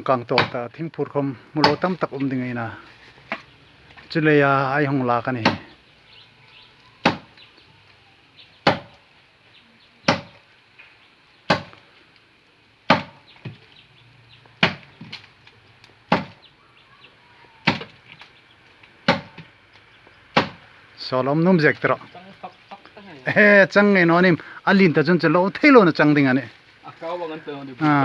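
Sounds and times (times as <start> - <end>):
axe chopping into tree trunk: 0.4 - 0.6, 5.4 - 5.7, 7.0 - 7.4, 8.6 - 9.0, 10.1 - 10.4, 11.5 - 11.8, 12.9 - 13.6, 14.6 - 15.2, 16.1 - 16.4, 17.6 - 18.0, 19.0 - 19.5, 20.3 - 20.6.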